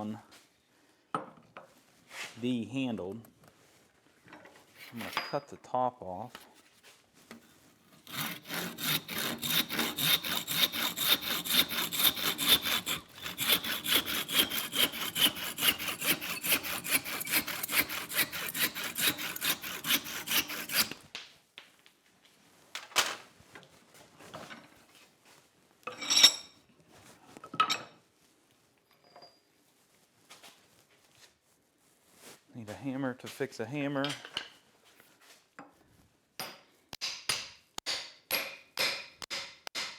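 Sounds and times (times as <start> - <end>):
saw cutting wood: 7.9 - 21.0.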